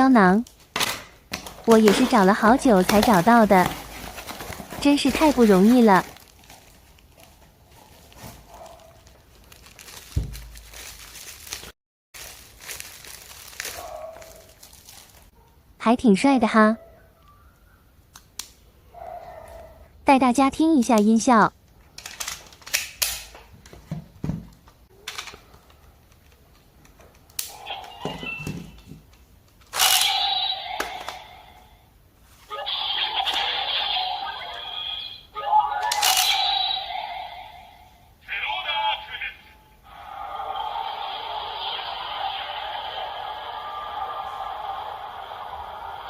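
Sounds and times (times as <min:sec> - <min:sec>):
plastic packaging crinkling: 0:01.3 - 0:15.3
electronic toy sound effect: 0:29.8 - 0:31.5, 0:32.6 - 0:37.7.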